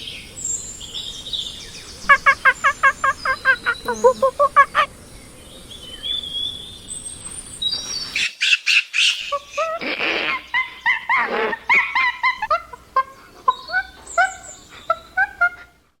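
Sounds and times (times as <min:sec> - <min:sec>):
chimpanzee hooting: 0:02.1 - 0:04.9, 0:09.2 - 0:15.8
chimpanzee screaming: 0:02.1 - 0:04.9, 0:09.2 - 0:15.7.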